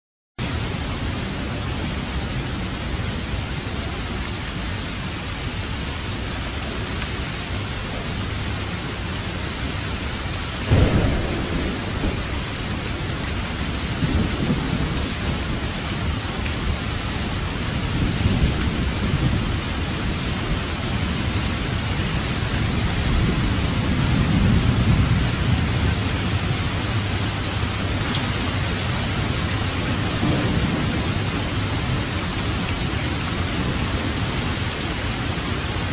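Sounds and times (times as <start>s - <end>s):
heavy rain: 0.4s - 35.9s
thunder rumbling: 10.6s - 35.9s.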